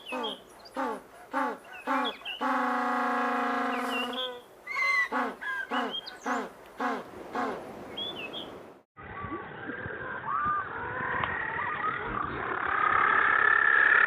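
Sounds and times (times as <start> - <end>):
scattered chirping calls: 0.0 - 2.6.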